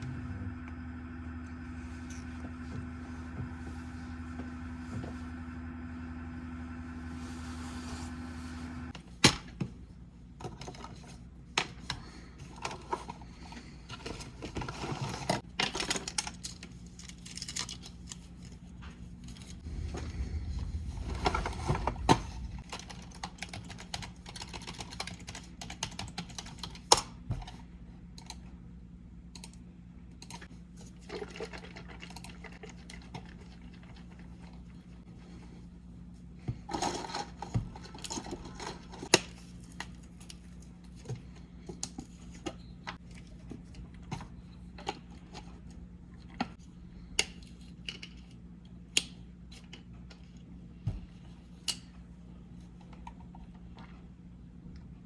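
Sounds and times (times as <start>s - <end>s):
low steady hum: 0.0s - 55.0s
keys tapping on keyboard: 22.8s - 26.9s.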